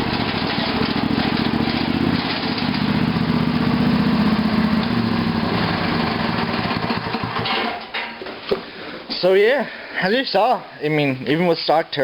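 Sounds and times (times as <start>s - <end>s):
lawn tractor engine running: 0.0s - 7.9s.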